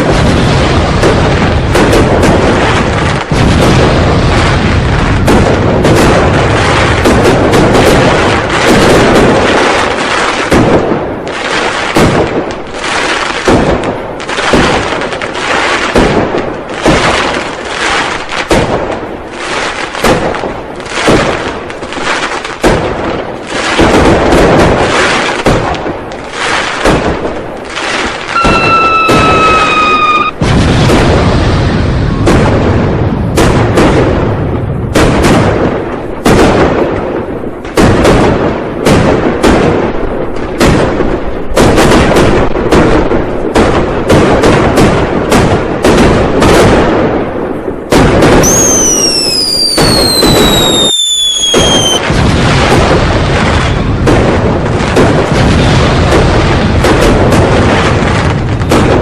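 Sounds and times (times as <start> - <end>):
firecrackers and fireworks banging: 0.0 - 59.0
high whistle-like tone: 28.3 - 30.4, 48.4 - 52.0.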